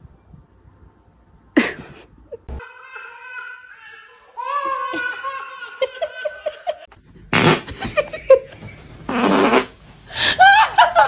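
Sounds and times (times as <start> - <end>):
person laughing hard: 1.6 - 2.6.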